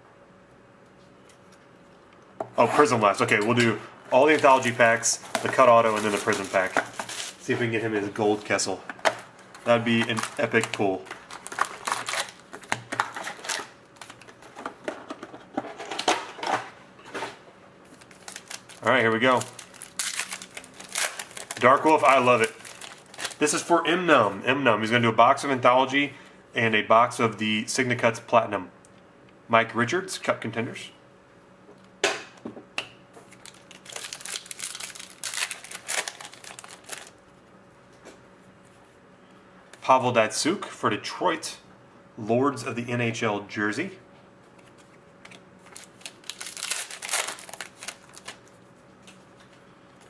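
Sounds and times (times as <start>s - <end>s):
foil wrappers rustling: 2.7s - 14.7s, 17.8s - 23.8s, 33.3s - 37.2s, 45.3s - 49.6s
card packs clicks and taps: 9.9s - 15.2s.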